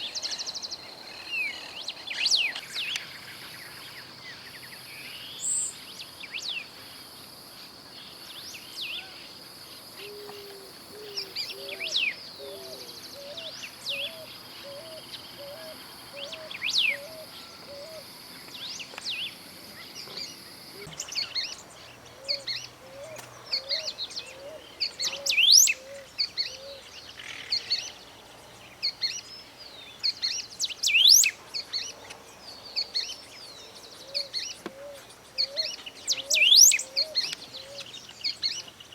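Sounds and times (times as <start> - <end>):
bird singing whistled notes: 10.0 - 28.0, 28.8 - 31.9, 32.6 - 38.9.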